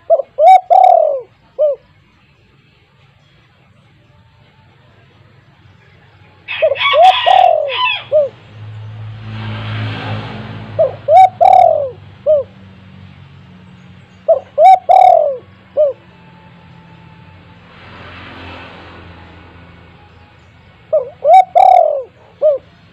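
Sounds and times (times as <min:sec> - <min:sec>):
dove cooing: 0:00.0 - 0:01.9, 0:06.5 - 0:08.4, 0:10.6 - 0:12.6, 0:14.3 - 0:16.0, 0:20.9 - 0:22.9.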